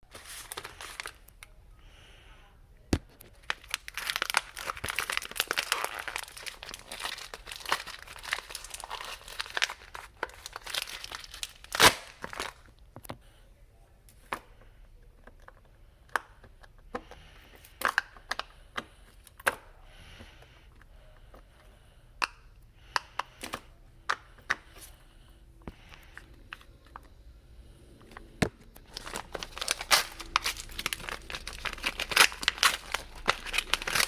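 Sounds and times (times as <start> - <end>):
packaging tearing: 0.1 - 1.3, 3.3 - 12.6, 28.8 - 34.0
packaging crinkling: 0.1 - 1.4, 3.2 - 12.7, 28.7 - 34.0.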